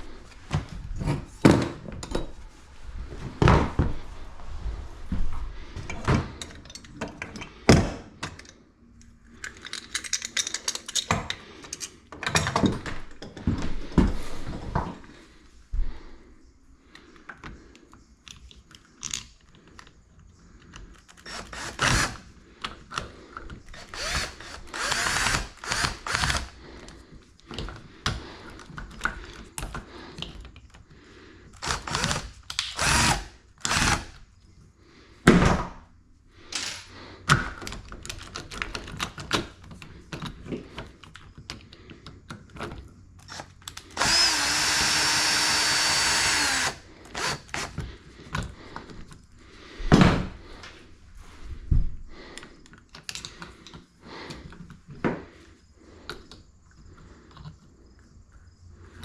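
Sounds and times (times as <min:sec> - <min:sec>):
knocks and scrapes of repair work: 0:00.2 - 0:04.1, 0:05.1 - 0:08.6, 0:09.3 - 0:15.2, 0:36.5 - 0:49.2
power drill running: 0:21.2 - 0:22.3, 0:23.7 - 0:26.5, 0:31.6 - 0:34.2, 0:43.3 - 0:47.8.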